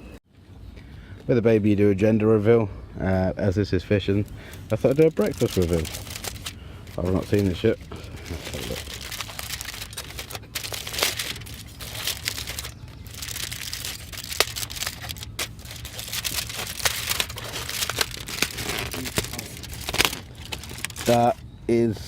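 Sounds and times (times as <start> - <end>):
food wrapping crinkling and tearing: 4.4 - 21.4.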